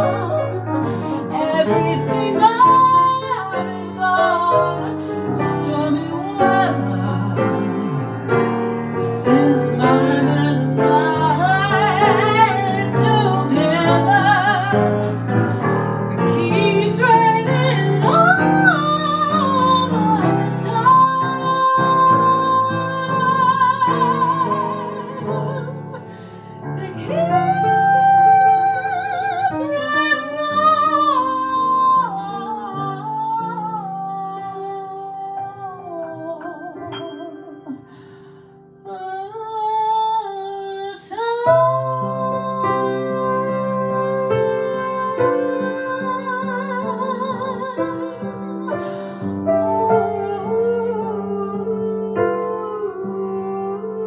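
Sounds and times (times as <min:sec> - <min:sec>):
woman singing: 0:00.0 - 0:38.2, 0:38.8 - 0:54.0
piano accompaniment: 0:00.0 - 0:54.0.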